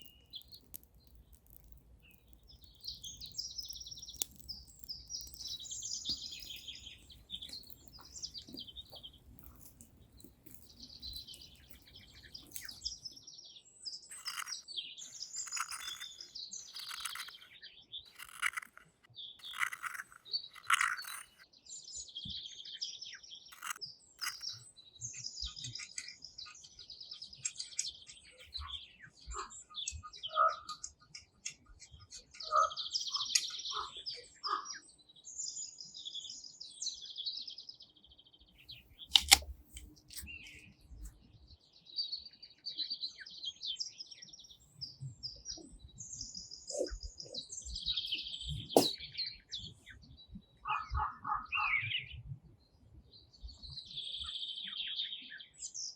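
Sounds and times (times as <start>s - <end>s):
songbirds chirping and singing: 0.0s - 55.9s
sharp clicks or knocks: 39.1s - 40.2s.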